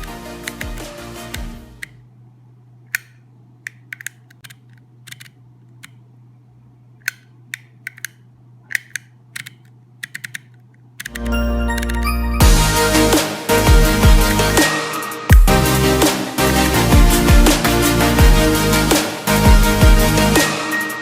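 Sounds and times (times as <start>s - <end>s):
electronic beat music: 11.2s - 21.0s.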